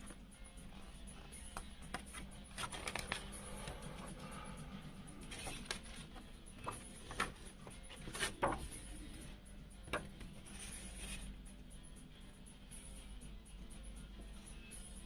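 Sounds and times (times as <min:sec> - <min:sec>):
cd case clicks and rustles: 0:01.9 - 0:03.8.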